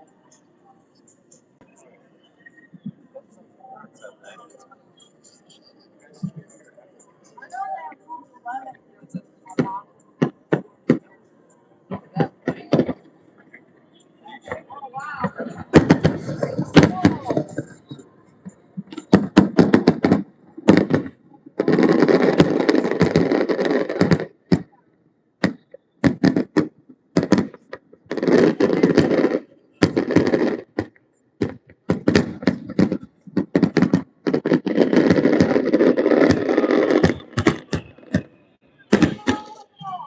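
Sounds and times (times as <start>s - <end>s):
fireworks bangs and pops: 11.9s - 13.0s, 15.2s - 18.0s, 18.8s - 24.7s, 25.4s - 40.0s
fireworks crackling: 11.9s - 13.0s, 14.4s - 18.1s, 18.8s - 24.7s, 25.4s - 40.0s.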